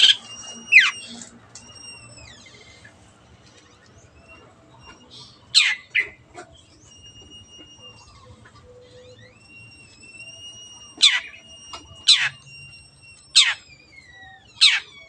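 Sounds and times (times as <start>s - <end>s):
harsh squawking notes sweeping down: 4.2s - 15.0s.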